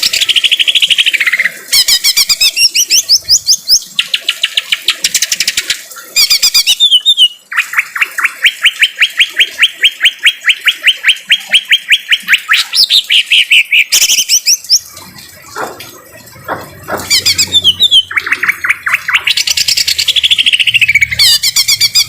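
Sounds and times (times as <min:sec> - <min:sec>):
high bird chattering: 0:00.0 - 0:22.0
bird trilling: 0:15.6 - 0:22.0.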